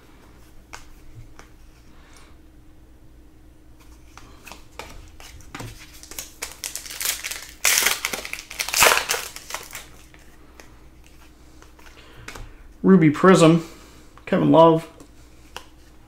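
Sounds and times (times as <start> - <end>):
foil wrapper crinkling: 5.2 - 10.2.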